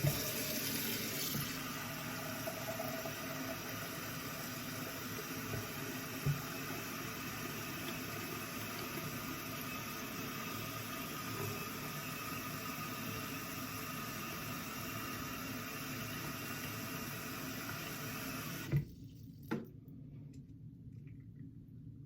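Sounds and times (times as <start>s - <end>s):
tap water running into sink: 0.0s - 19.7s
tap shutting off with thump: 5.5s - 6.5s, 18.6s - 18.9s.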